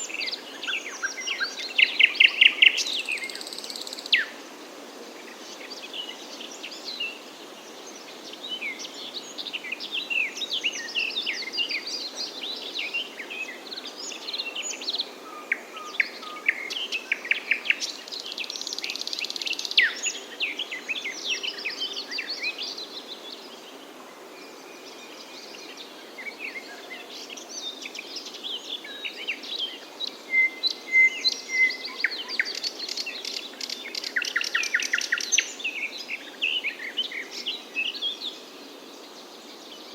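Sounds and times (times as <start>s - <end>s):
steady background hiss: 0.0s - 39.9s
songbirds chirping and singing: 5.1s - 39.9s.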